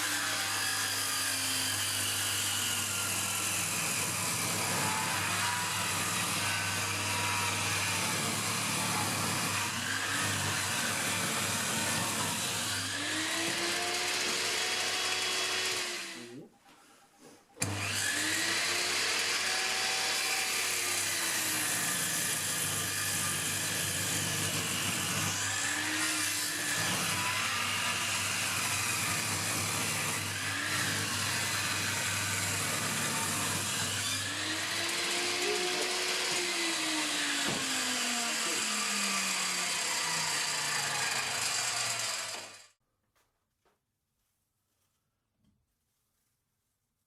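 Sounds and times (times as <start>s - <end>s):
power tool cutting wood: 0.0s - 16.4s, 17.6s - 42.8s.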